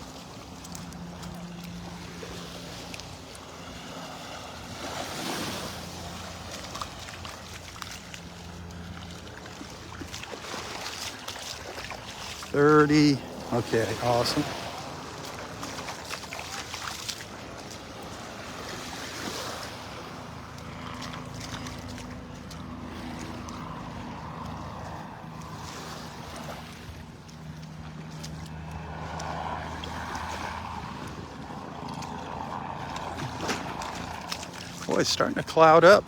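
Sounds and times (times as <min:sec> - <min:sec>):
surf washing on beach: 0:00.0 - 0:27.2, 0:27.8 - 0:36.0
low engine hum: 0:00.0 - 0:36.0
wind on microphone: 0:28.9 - 0:34.8.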